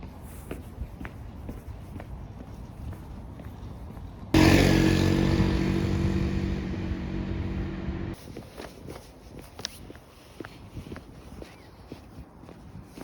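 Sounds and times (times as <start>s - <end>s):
loud mechanical drone: 4.4s - 8.2s.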